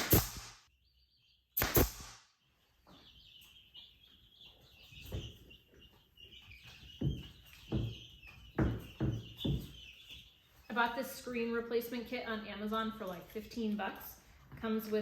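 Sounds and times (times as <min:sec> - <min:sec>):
birds chirping: 0:00.6 - 0:15.0
dull thumps and knocks: 0:07.0 - 0:09.8.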